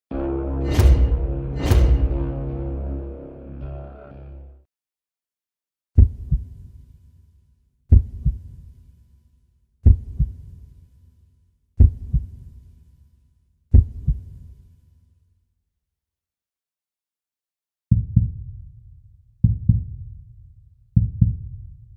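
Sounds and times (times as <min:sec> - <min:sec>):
deep heartbeat: 0:06.0 - 0:06.6, 0:07.9 - 0:08.5, 0:09.8 - 0:10.5, 0:11.8 - 0:12.4, 0:13.7 - 0:14.3, 0:17.9 - 0:18.6, 0:19.4 - 0:20.3, 0:21.0 - 0:21.9.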